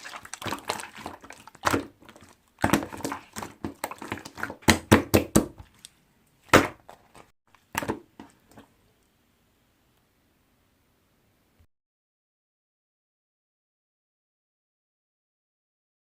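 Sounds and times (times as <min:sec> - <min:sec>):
slime squelching wet pops: 0:00.0 - 0:08.0.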